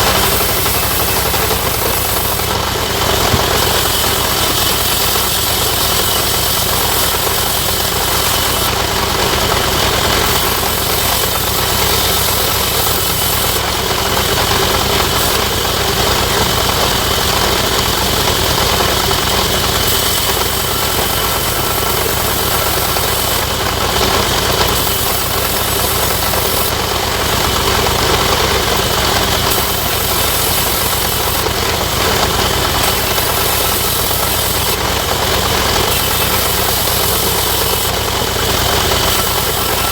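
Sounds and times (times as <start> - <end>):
sawmill machinery drone: 0.0 - 39.9.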